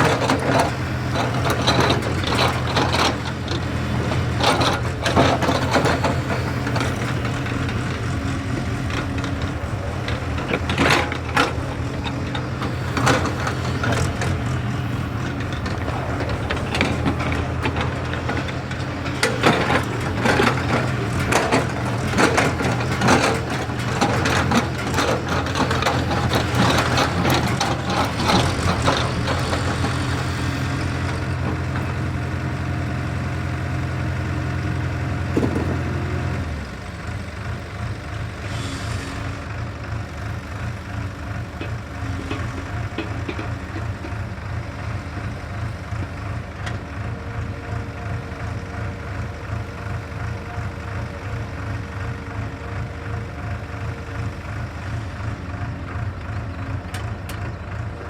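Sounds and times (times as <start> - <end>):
machine knocks and clanks: 0.0 - 30.1
excavator diesel engine running: 0.0 - 58.0.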